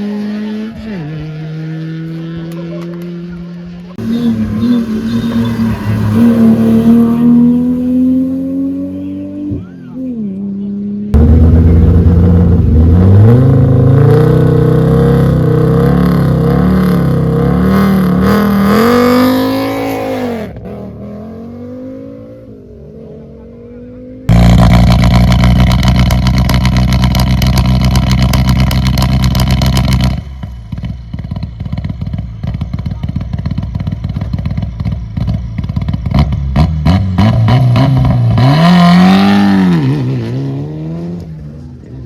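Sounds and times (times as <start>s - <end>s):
high-revving engine: 0.0s - 42.0s
rally car engines revving: 0.0s - 42.0s
car passing by: 1.1s - 9.3s
engine popping and crackling: 11.2s - 13.9s, 24.3s - 36.6s.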